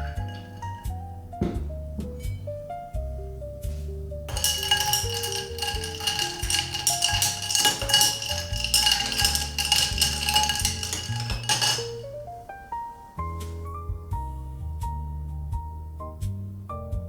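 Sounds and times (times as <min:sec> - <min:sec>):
kitchen knocks and clatter: 0:00.0 - 0:02.4, 0:04.3 - 0:12.2.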